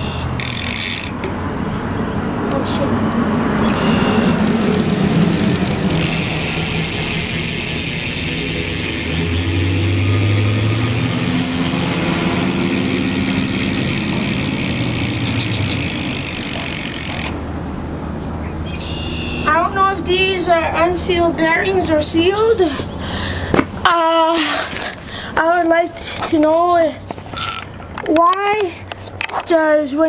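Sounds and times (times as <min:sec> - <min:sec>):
bicycle hub freewheel buzzing: 0:00.4 - 0:01.3, 0:03.7 - 0:17.4.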